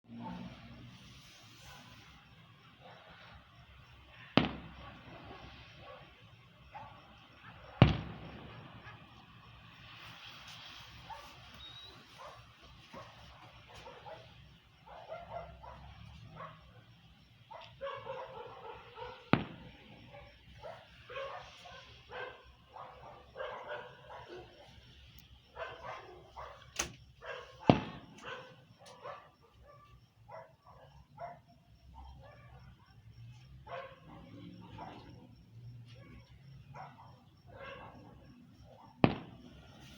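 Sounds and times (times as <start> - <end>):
fireworks bangs: 0.3 - 14.4, 18.8 - 22.0, 26.6 - 29.0, 38.8 - 39.9
dog barking and yipping: 6.7 - 7.6, 12.0 - 14.3, 14.9 - 16.6, 17.5 - 19.3, 20.1 - 24.8, 25.6 - 32.8, 33.6 - 35.1, 35.9 - 38.9.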